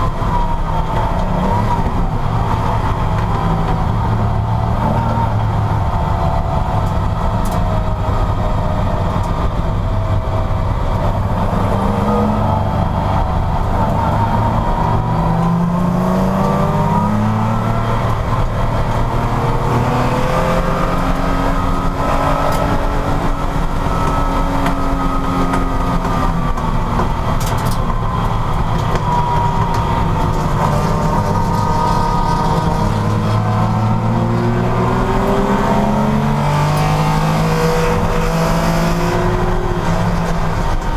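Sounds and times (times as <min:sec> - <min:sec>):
racing car engine revving: 0:00.0 - 0:40.9.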